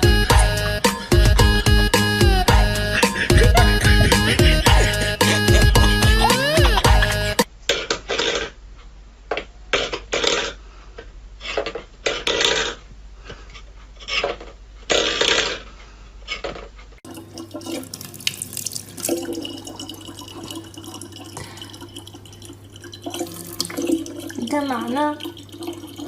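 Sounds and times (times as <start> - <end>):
water running: 17.0 - 26.0
water splashing: 17.0 - 26.0
low steady hum: 17.1 - 26.0.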